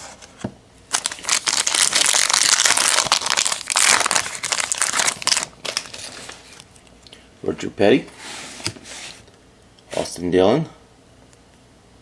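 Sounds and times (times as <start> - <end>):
wrapper tearing and crinkling: 0.9 - 6.7.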